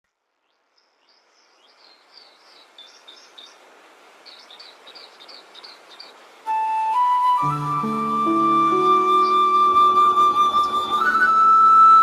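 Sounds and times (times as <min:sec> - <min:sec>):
outdoor background hiss: 0:00.0 - 0:12.0
songbird twittering: 0:00.4 - 0:03.6, 0:04.2 - 0:06.3, 0:08.2 - 0:11.3.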